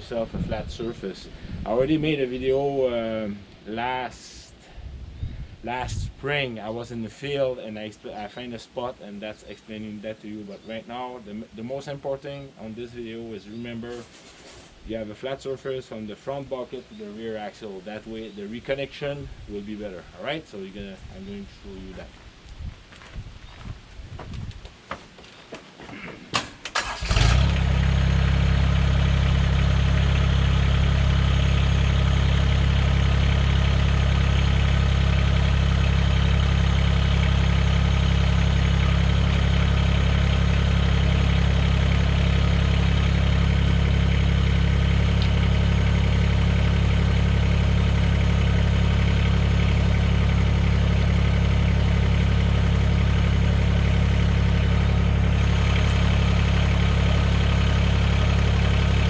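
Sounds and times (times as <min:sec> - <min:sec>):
tractor diesel engine starting and idling: 0:26.4 - 0:59.0.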